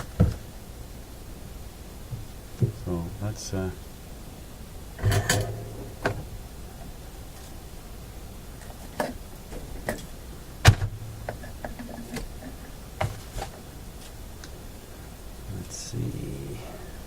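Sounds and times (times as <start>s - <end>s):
hand tools clicking and knocking: 5.0s - 6.2s.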